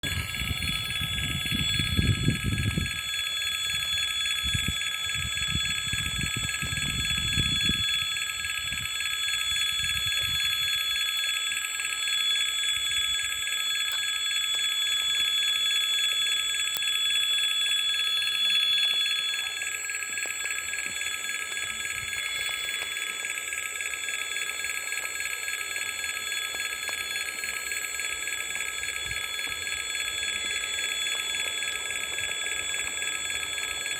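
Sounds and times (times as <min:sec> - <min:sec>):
low rumbling noise: 0:00.0 - 0:10.8
level crossing warning bell: 0:00.0 - 0:33.9.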